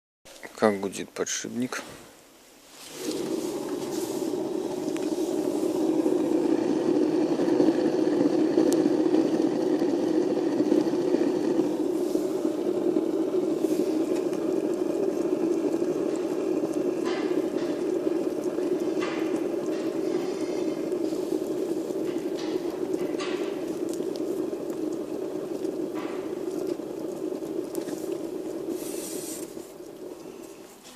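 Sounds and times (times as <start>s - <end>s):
machine bearing humming: 2.9s - 30.9s.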